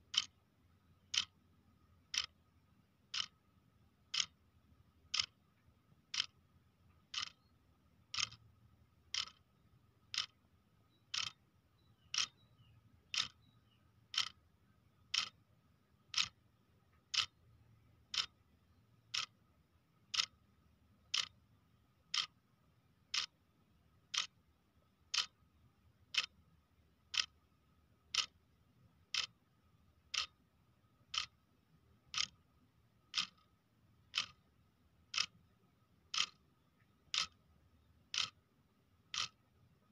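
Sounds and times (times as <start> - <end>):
clock ticking: 0.0 - 0.4, 1.0 - 2.4, 3.1 - 3.4, 4.1 - 4.4, 5.0 - 5.4, 6.0 - 8.5, 9.1 - 10.5, 11.1 - 11.4, 12.1 - 12.4, 13.1 - 13.5, 14.1 - 14.4, 15.1 - 15.4, 16.0 - 17.4, 18.0 - 18.4, 19.1 - 19.4, 20.0 - 20.4, 21.1 - 21.4, 22.0 - 22.4, 23.1 - 23.4, 24.0 - 24.4, 25.1 - 25.4, 26.1 - 26.4, 27.1 - 27.5, 28.1 - 28.4, 29.1 - 29.4, 30.1 - 30.4, 31.0 - 31.4, 32.1 - 34.5, 35.1 - 35.5, 36.1 - 36.5, 37.1 - 37.4, 38.1 - 38.5, 39.1 - 39.5.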